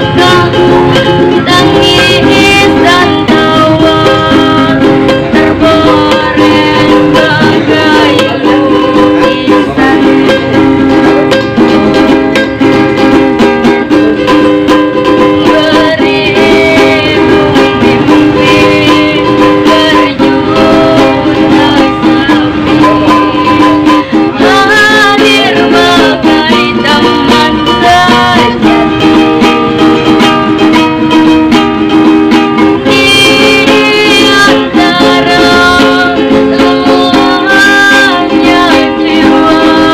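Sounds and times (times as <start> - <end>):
strummed ukulele: 0.0 - 39.9.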